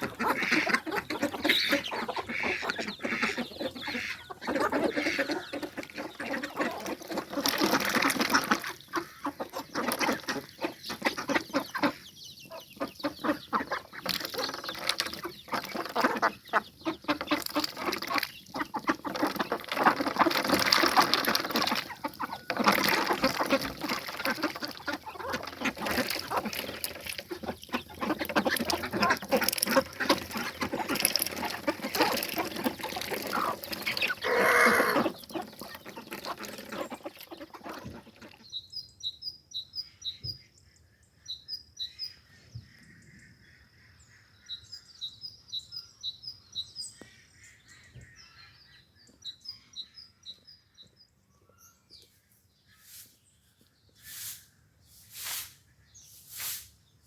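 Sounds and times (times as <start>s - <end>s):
poultry clucking: 0.0s - 39.1s.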